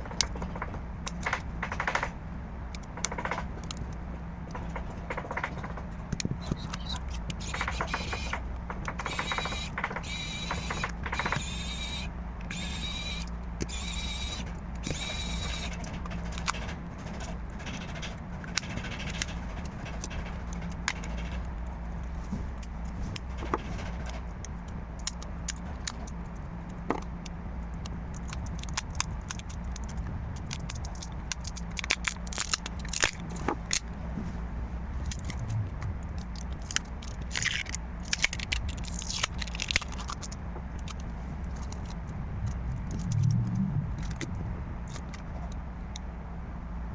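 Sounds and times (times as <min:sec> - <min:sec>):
tools scraping on phone: 0:09.0 - 0:16.5
low hum: 0:29.4 - 0:46.9.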